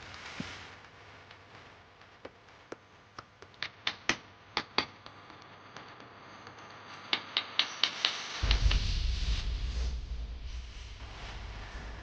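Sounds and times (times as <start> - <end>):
low rumbling noise: 8.4 - 12.0.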